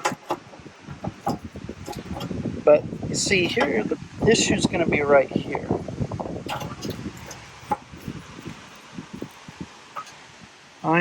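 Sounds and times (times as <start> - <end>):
rustling of handled parts: 0.0 - 2.3.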